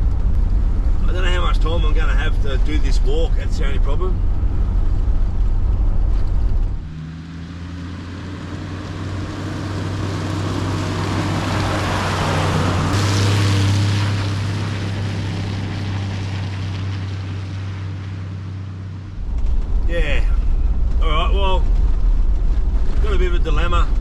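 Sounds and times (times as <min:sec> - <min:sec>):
low engine drone: 0:00.0 - 0:24.0.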